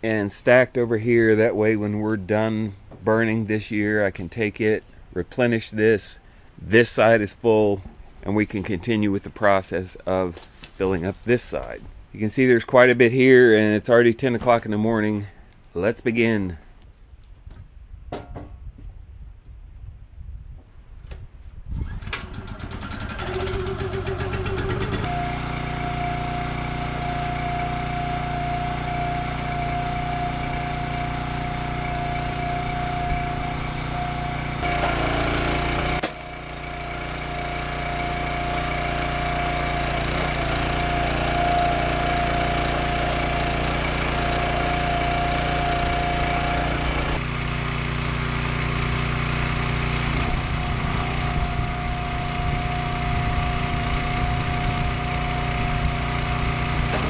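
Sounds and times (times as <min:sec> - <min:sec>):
engine running: 0:21.8 - 0:57.0
high whine: 0:23.3 - 0:47.3, 0:50.1 - 0:57.0.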